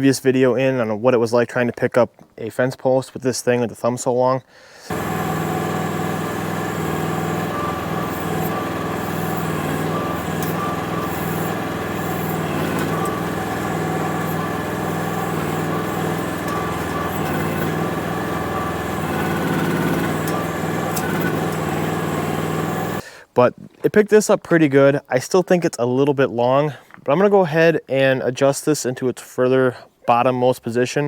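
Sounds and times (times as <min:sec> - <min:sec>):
excavator engine running: 0:04.9 - 0:23.0.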